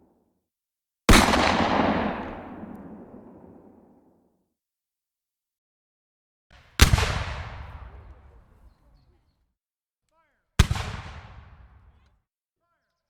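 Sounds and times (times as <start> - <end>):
gunshot with echoing tail: 1.1 - 4.0, 10.6 - 11.7.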